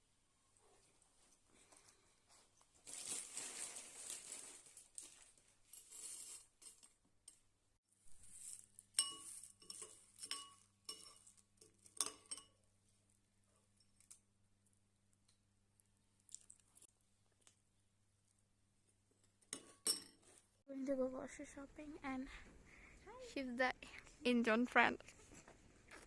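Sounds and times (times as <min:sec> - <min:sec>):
rustling: 0:00.6 - 0:06.9, 0:08.1 - 0:10.3
dishes and glassware clinking: 0:09.0 - 0:12.6, 0:19.5 - 0:20.3.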